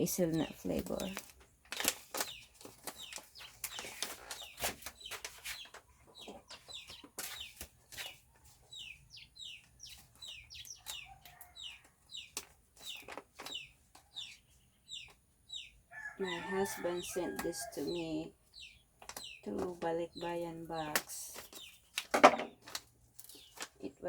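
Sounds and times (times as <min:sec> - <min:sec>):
chicks peeping: 0:00.2 - 0:01.2, 0:01.8 - 0:24.0
packet crinkling and clicking: 0:00.8 - 0:05.8, 0:12.3 - 0:13.5.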